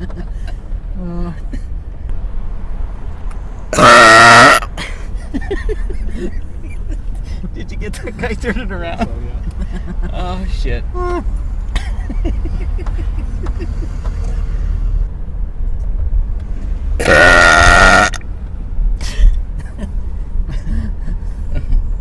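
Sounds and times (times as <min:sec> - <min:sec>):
car rumble while driving: 0:00.0 - 0:22.0
person belching loudly: 0:03.8 - 0:04.7, 0:17.0 - 0:18.2.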